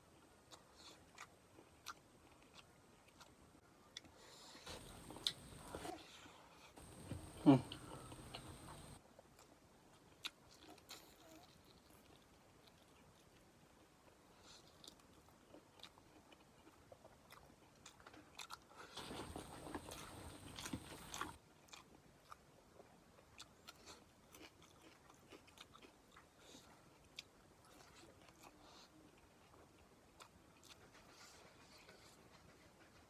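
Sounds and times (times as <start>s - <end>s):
chewing and mouth smacks: 4.7s - 5.9s, 6.8s - 13.4s, 14.0s - 33.0s.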